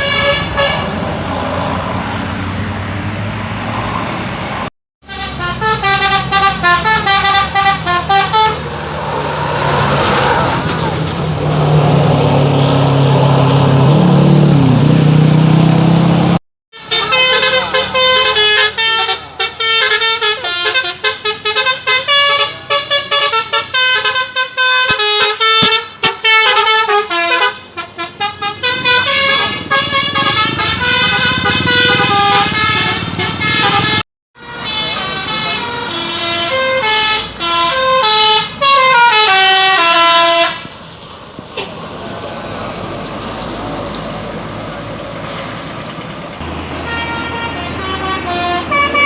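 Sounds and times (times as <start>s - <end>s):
musical bus horns playing melody: 0.0s - 1.0s, 5.0s - 8.8s, 16.8s - 40.7s, 46.8s - 49.0s
vehicle noise: 0.0s - 49.0s.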